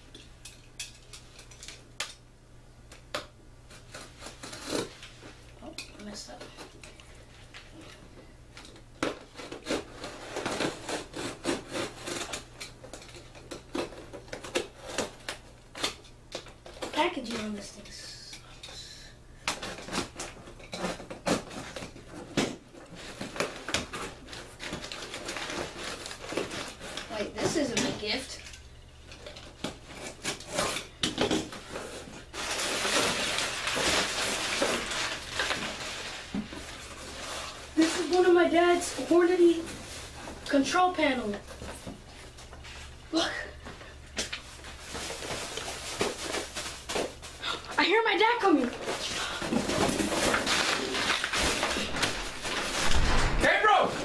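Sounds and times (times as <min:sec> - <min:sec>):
packing material rustling: 0:31.5 - 0:40.5, 0:44.4 - 0:47.4, 0:48.5 - 0:54.0
cardboard box rustling and scraping: 0:48.8 - 0:54.0.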